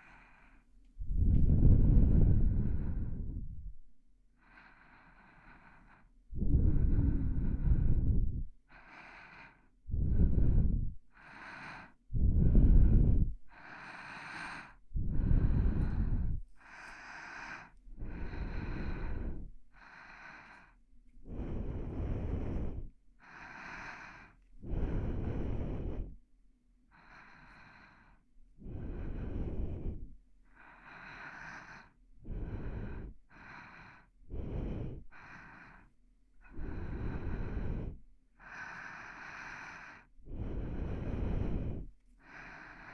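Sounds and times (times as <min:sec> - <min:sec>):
close breathing: 0:00.0 - 0:42.9.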